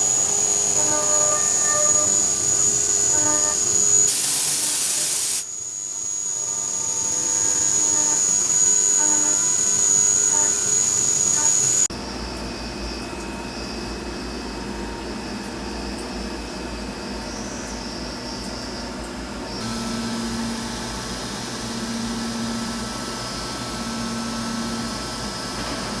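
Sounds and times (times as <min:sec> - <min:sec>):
cnc machine running: 0:00.0 - 0:11.9.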